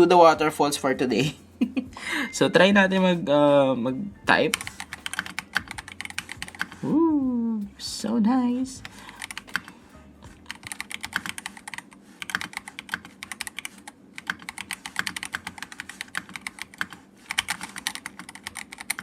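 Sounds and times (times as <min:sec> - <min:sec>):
mechanical keyboard key clacks: 0:10.5 - 0:19.0.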